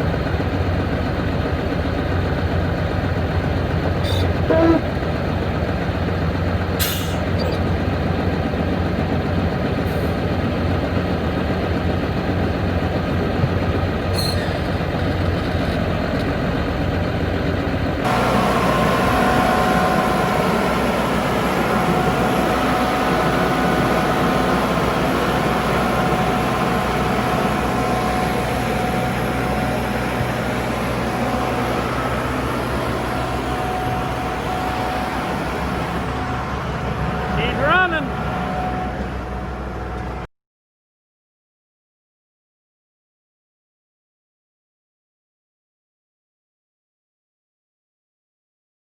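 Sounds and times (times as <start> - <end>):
truck diesel engine running: 0.0 - 40.3
steady whining tones: 4.4 - 4.9, 18.1 - 40.2.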